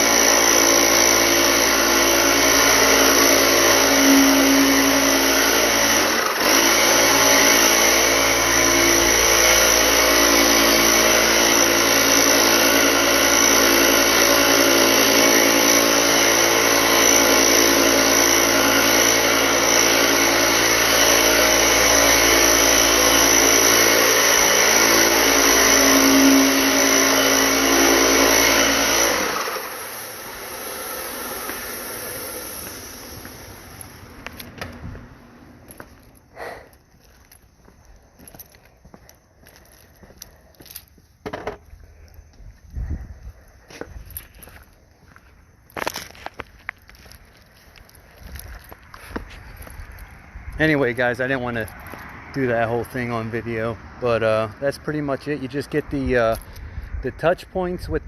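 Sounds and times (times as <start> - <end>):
motor-driven sprayer running: 0.0 - 34.9.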